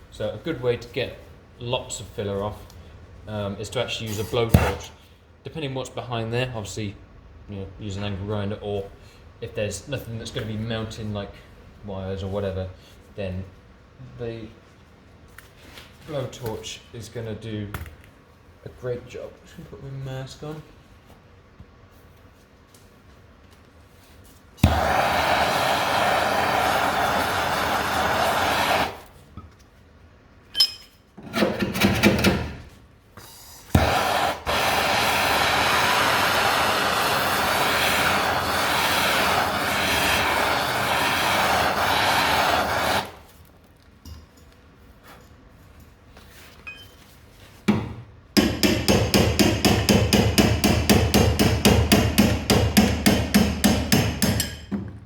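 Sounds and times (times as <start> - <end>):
blowtorch flame hissing: 4.2 - 4.9, 24.6 - 29.2, 33.8 - 43.4.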